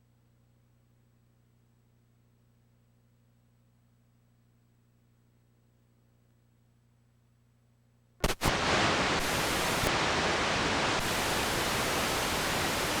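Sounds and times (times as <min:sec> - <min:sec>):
sharp crackle: 0:08.2 - 0:10.1
tv static hiss: 0:08.2 - 0:13.0.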